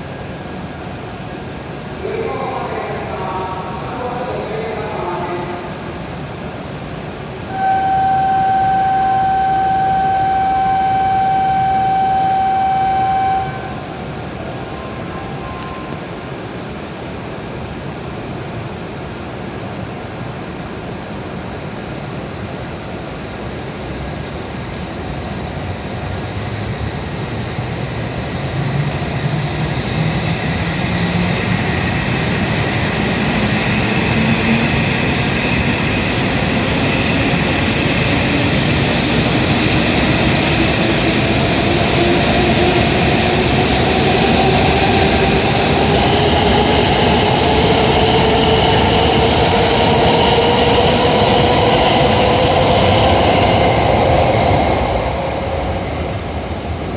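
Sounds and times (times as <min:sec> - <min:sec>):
train rumble: 0:00.0 - 0:56.9
train motor whine: 0:07.5 - 0:13.7.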